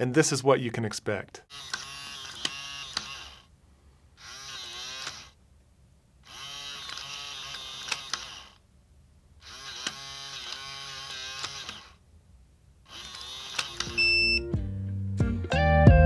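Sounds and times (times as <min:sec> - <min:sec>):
lock motor whining: 0:01.5 - 0:03.5, 0:04.2 - 0:05.4, 0:06.2 - 0:08.6, 0:09.4 - 0:12.0, 0:12.9 - 0:14.4
sharp bolt clicks: 0:13.0 - 0:14.0.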